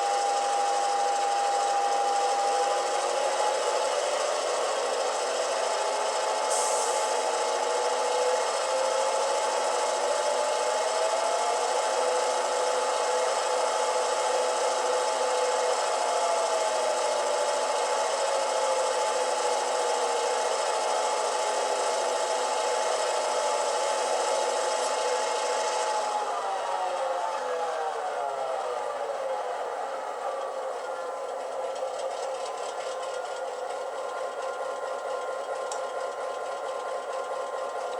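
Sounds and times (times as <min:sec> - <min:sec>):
diesel locomotive engine sound: 0:00.0 - 0:37.9.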